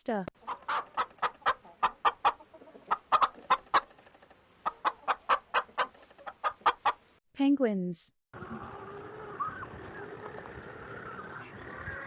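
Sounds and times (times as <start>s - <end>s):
chicken clucking: 0.4s - 7.1s.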